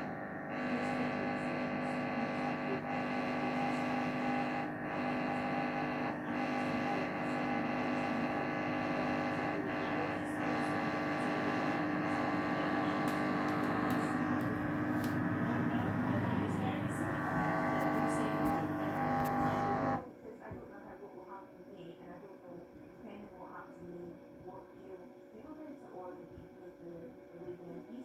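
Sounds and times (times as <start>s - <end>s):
washing machine chugging: 0.0s - 20.0s
washing machine motor hum: 0.0s - 20.0s.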